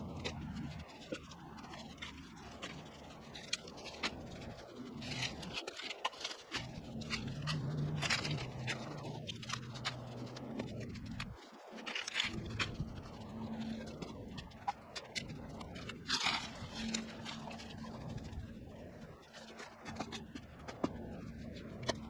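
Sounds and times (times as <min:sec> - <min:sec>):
clicks and scraping: 0:00.0 - 0:22.0.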